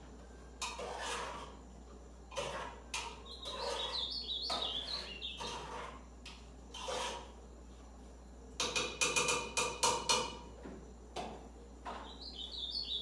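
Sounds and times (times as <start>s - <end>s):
bird singing whistled notes: 3.2s - 5.4s, 12.0s - 13.0s.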